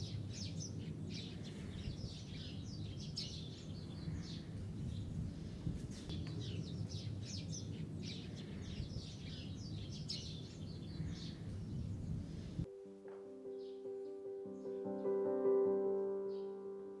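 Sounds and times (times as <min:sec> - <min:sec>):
low outdoor rumble: 0:00.0 - 0:12.7
small birds chirping: 0:00.0 - 0:12.7
piano music: 0:12.3 - 0:17.0.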